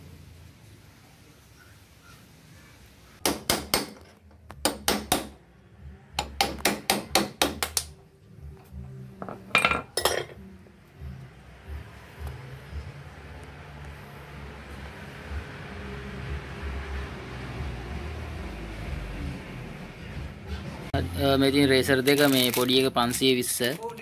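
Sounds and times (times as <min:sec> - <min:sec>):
hammer striking metal: 0:03.2 - 0:05.4, 0:06.2 - 0:07.9.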